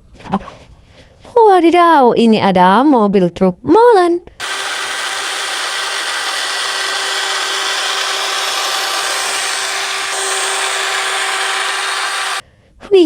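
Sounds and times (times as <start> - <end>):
rasping scrubbing: 4.4 - 12.4.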